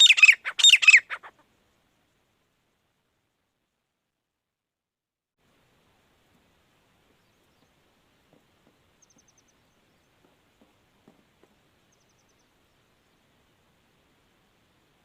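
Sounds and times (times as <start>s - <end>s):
rapid high-pitched chirps: 0.0s - 1.3s
faint steady hiss: 0.4s - 15.0s.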